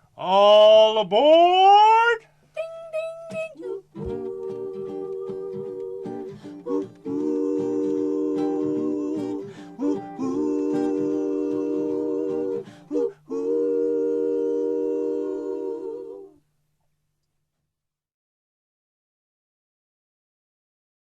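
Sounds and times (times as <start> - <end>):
acoustic guitar: 2.2 - 16.4
female vocal group singing harmonies: 2.6 - 16.4.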